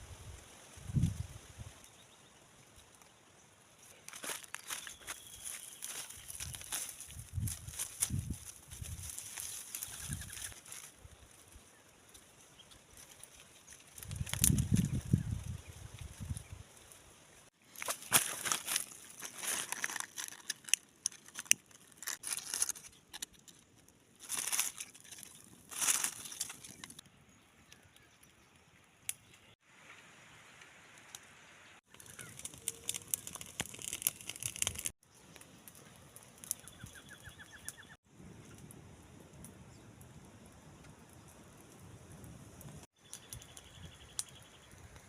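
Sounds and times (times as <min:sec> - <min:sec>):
dry leaves and twigs rustling: 0:00.0 - 0:27.1, 0:30.9 - 0:38.6.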